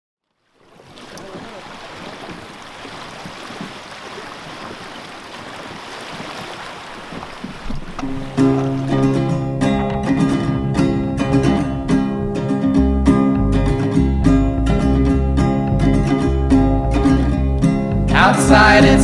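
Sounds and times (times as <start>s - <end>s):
wind: 0.2s - 18.2s
surf-like noise: 0.6s - 9.4s
plucked guitar music: 7.8s - 19.0s.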